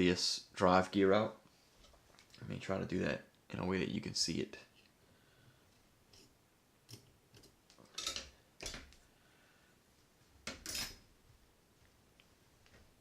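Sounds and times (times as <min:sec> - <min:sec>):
small metal parts clinking and scraping: 0:06.9 - 0:08.8.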